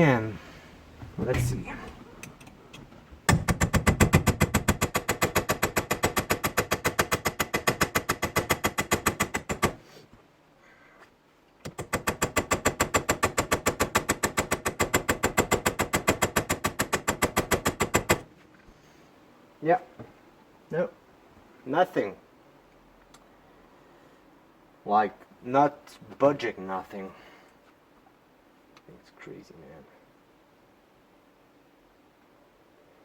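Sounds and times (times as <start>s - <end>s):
hammer striking pin punch: 3.3s - 9.8s.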